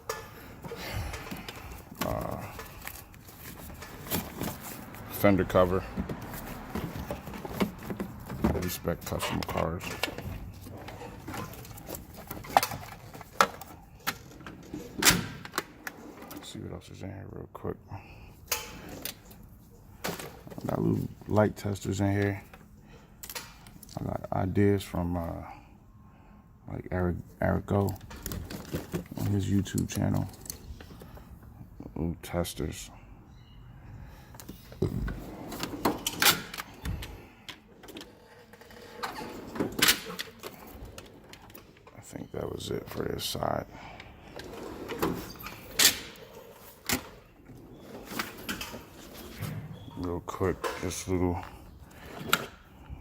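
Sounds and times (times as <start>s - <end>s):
tools clattering: 0.0s - 15.6s.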